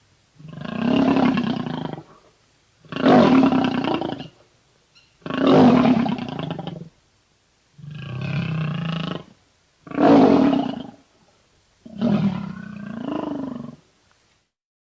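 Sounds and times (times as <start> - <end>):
big cat roaring: 0.4 - 2.2, 2.8 - 4.4, 5.2 - 6.9, 7.8 - 11.0, 11.9 - 13.8.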